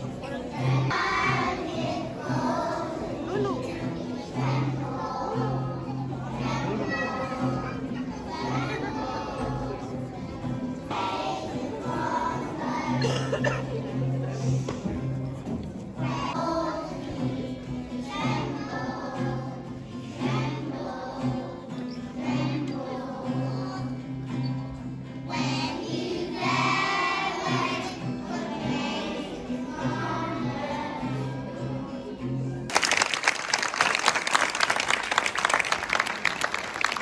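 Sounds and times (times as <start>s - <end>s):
children singing: 0.0s - 14.5s, 16.0s - 24.5s, 25.2s - 32.2s
loud applause: 32.7s - 37.0s.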